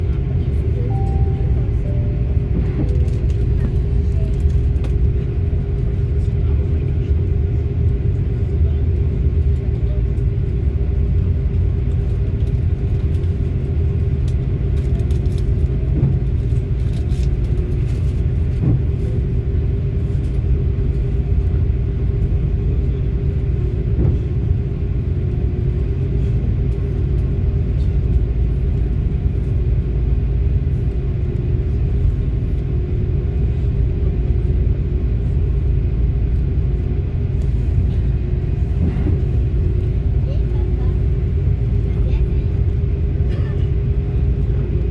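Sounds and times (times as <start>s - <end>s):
jet engines running: 0.0s - 44.9s.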